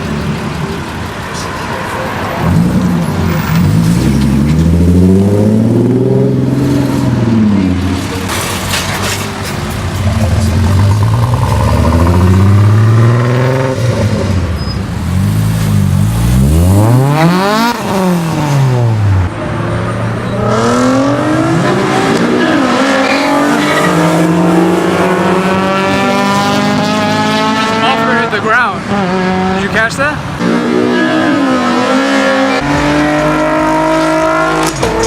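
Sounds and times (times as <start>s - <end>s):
car engines revving: 0.0s - 35.0s.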